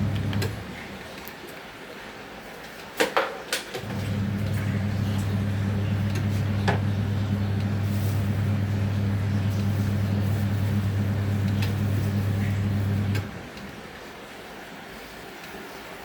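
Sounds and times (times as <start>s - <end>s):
washing machine motor humming: 0.0s - 1.3s, 3.8s - 14.4s.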